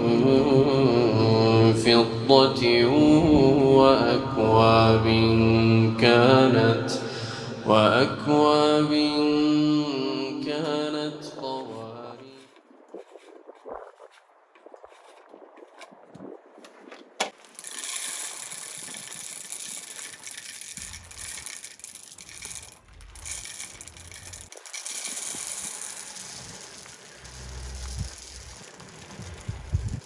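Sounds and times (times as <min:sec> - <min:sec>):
bird seed pouring: 0:12.9 - 0:14.2, 0:14.9 - 0:15.9, 0:17.3 - 0:30.0.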